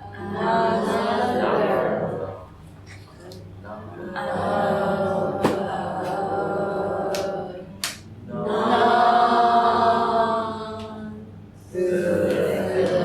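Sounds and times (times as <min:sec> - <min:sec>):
students speaking in chorus: 0:00.0 - 0:02.4, 0:04.0 - 0:07.7, 0:11.7 - 0:13.0
hand claps: 0:05.4 - 0:06.2, 0:07.1 - 0:08.1, 0:12.2 - 0:13.0.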